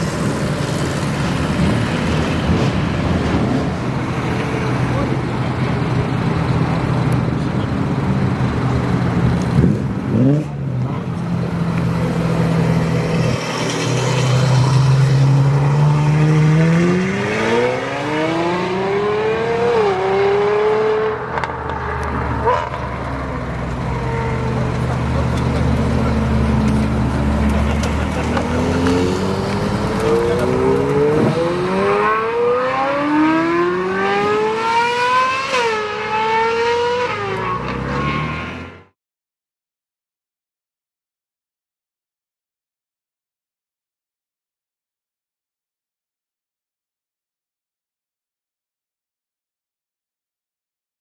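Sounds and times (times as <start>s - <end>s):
second car engine rising: 3.8s - 38.8s
sports car engine revving: 25.1s - 38.7s.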